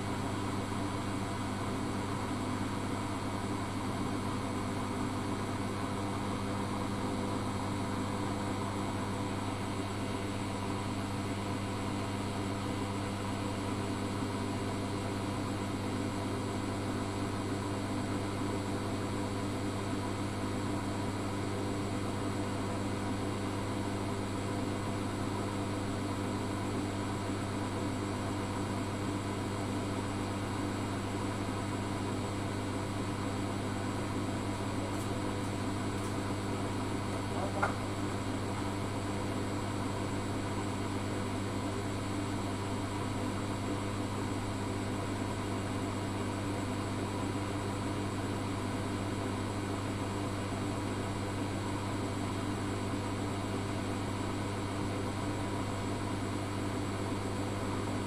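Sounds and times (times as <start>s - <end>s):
washing machine humming: 0.0s - 58.0s.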